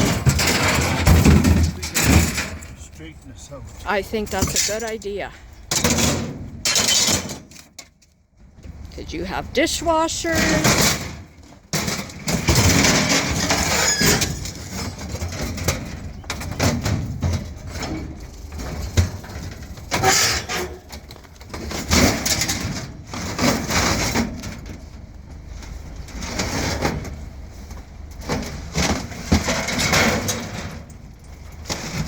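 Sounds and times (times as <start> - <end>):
scrap clattering and scraping: 0.0 - 3.1, 9.9 - 32.0.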